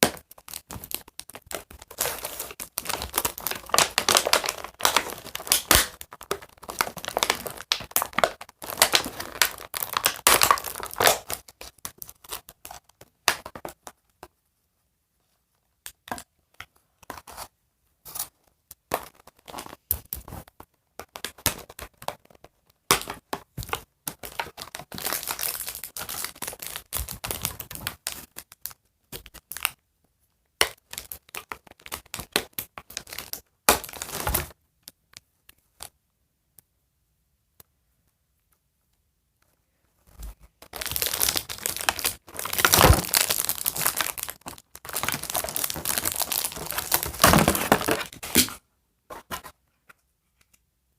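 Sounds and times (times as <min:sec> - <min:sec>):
packaging crinkling and tearing: 0:00.0 - 0:13.5, 0:23.6 - 0:29.7, 0:30.7 - 0:34.5, 0:40.6 - 0:48.6.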